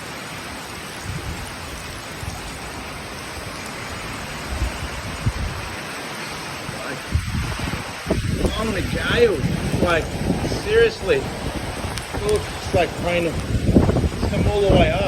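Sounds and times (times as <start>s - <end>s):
heavy rain pouring: 0.0s - 15.0s
low rumbles: 6.7s - 15.0s.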